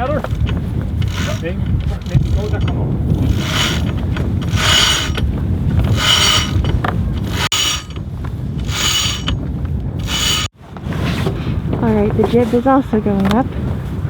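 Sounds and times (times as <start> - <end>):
pulley blocks whirring: 0.2 - 8.0, 8.6 - 9.4, 10.0 - 10.5.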